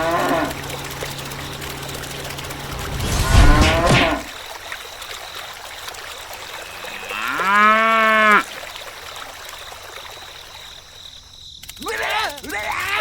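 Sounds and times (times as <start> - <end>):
cow mooing: 0.0 - 0.6.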